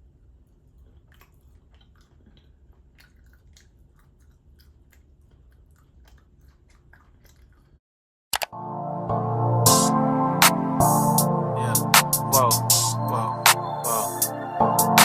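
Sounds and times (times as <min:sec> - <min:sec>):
chewing mouth clicks and squelches: 0:00.0 - 0:07.8.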